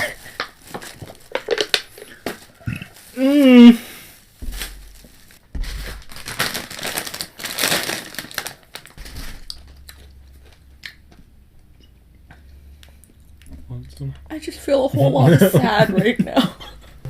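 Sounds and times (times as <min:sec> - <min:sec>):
snack packaging crinkling: 0:00.0 - 0:11.2.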